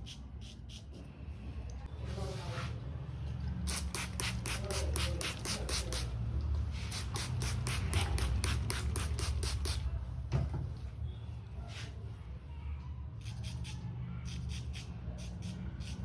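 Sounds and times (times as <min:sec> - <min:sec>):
razor scraping hair: 0:03.7 - 0:06.1, 0:06.9 - 0:09.8, 0:13.2 - 0:16.0.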